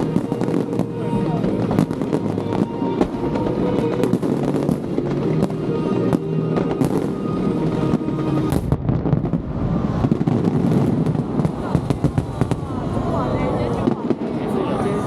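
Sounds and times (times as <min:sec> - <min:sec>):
music playing: 0:00.0 - 0:08.8
fireworks bangs and crackles: 0:00.0 - 0:15.0.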